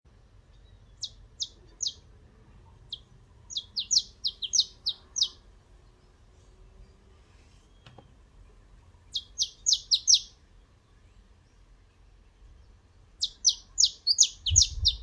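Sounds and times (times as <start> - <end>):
canary chirping: 0.5 - 2.1, 2.8 - 5.5, 9.1 - 10.4, 13.2 - 15.0.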